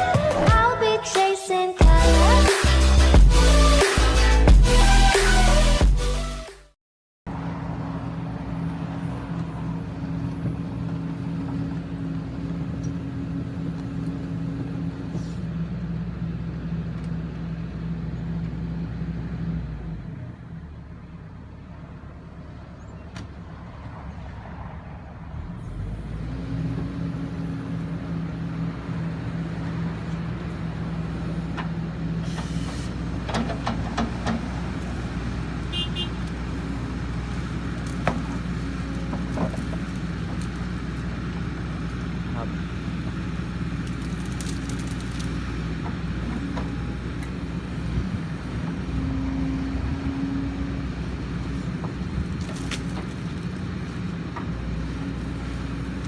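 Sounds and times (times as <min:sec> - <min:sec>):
excavator diesel engine running: 0:01.8 - 0:06.4, 0:25.3 - 0:56.0.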